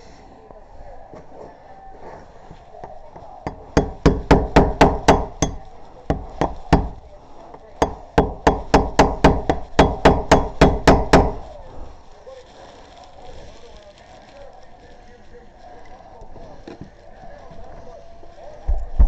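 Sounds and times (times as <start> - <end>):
rapid sharp knocks: 3.5 - 7.0, 7.8 - 11.5.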